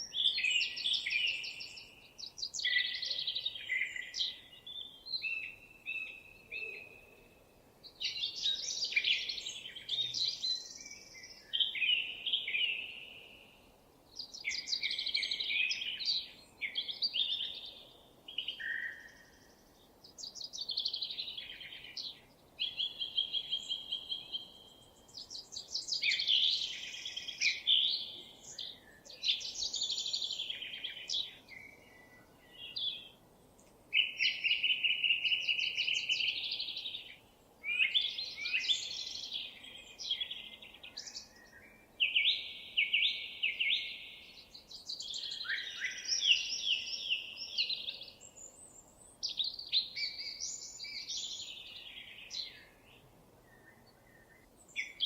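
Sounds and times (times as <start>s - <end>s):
songbirds singing: 0.0s - 55.0s.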